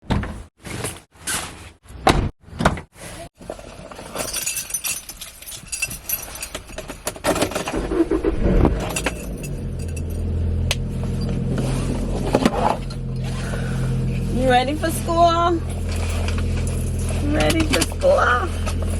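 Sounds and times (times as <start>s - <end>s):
clunks clicks and rattling: 3.9s - 8.0s, 14.8s - 18.9s
car engine running: 7.6s - 18.9s.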